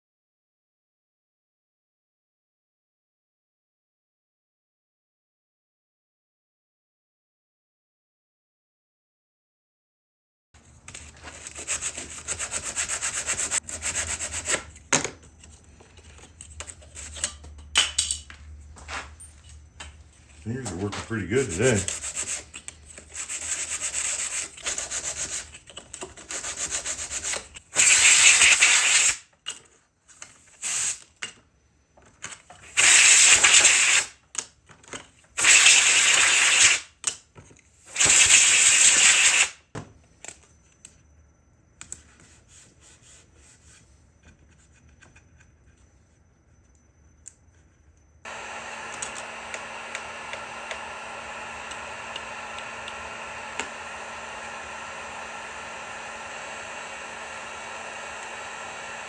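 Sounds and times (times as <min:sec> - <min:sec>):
hand sanding a knife: 0:11.2 - 0:14.8, 0:20.5 - 0:25.6, 0:26.2 - 0:27.5
machine hiss with low hum: 0:18.8 - 0:22.6.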